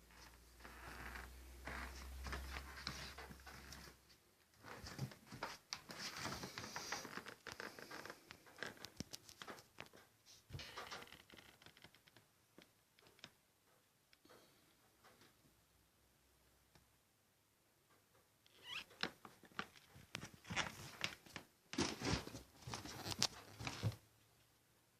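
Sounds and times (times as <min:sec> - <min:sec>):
scratching and rustling: 0:00.0 - 0:13.8, 0:18.6 - 0:24.0.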